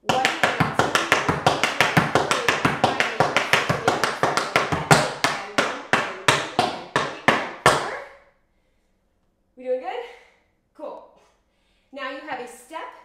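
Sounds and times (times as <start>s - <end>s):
tap shoes striking floor: 0.0s - 8.0s.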